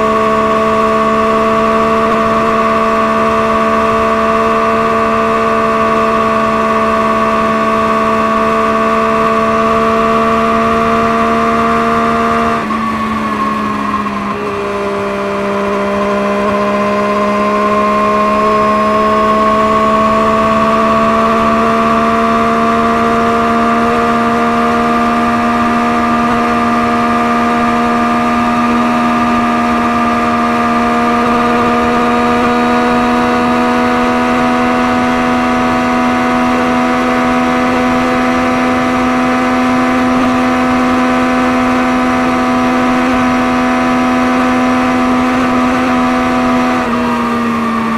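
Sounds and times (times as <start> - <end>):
engine running through exhaust: 0.0 - 47.9.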